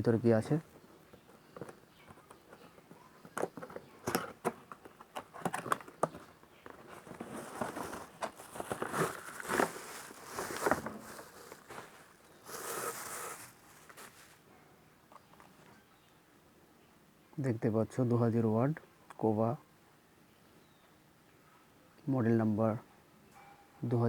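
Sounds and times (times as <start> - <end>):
packaging rustling and crinkling: 1.1 - 14.5.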